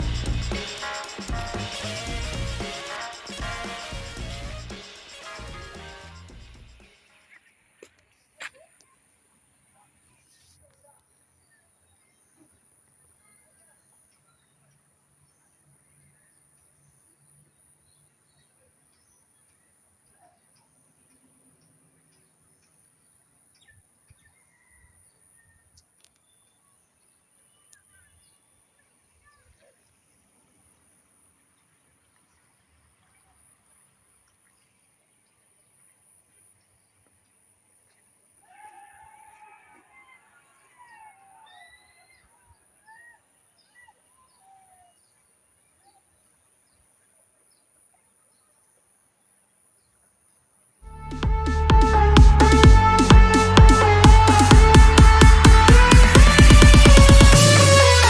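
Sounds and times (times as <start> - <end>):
faint high hiss: 0.0 - 10.8.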